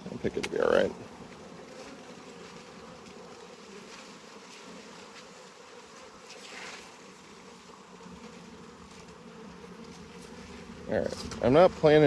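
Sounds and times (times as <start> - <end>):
honeybees humming: 0.0 - 12.0
scraping rustle: 6.0 - 7.2.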